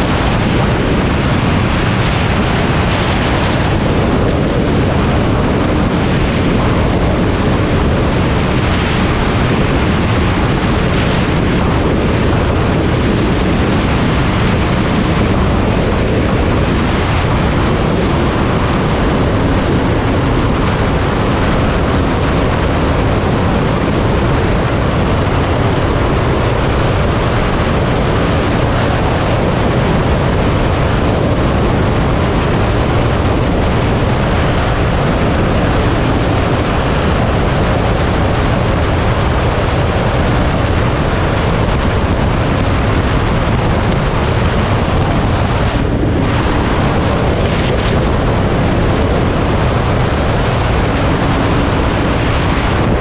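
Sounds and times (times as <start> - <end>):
wind rush on microphone: 0.0 - 53.0
motorcycle engine running: 41.8 - 53.0.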